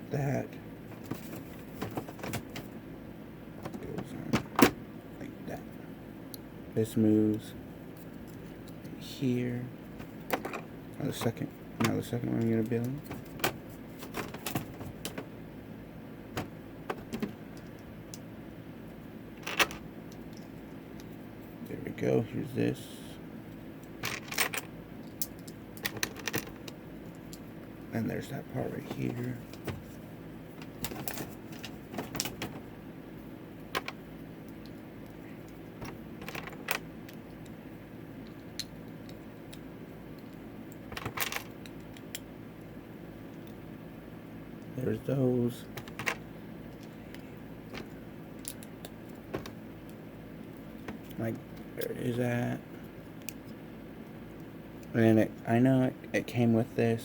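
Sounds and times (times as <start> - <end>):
steady low hum: 0.0 - 57.0.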